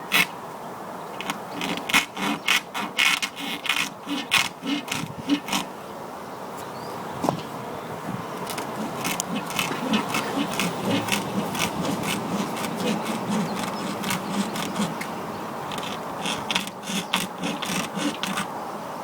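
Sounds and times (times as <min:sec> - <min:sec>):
hacksaw rasping: 0:00.1 - 0:00.3, 0:01.2 - 0:05.7, 0:08.4 - 0:15.1, 0:15.7 - 0:18.5.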